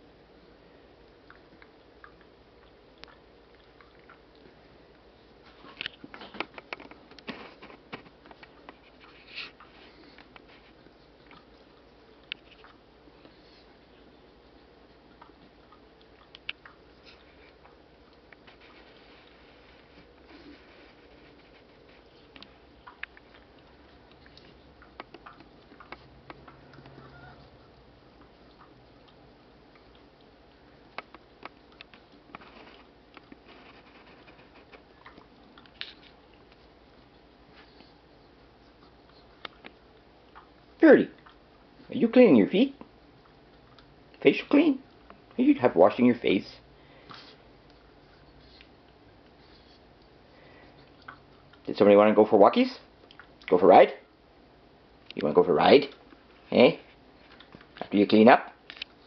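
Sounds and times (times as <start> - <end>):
dog licking mouth noises: 1.2 - 46.4
dog breath: 13.1 - 15.5, 46.7 - 51.2.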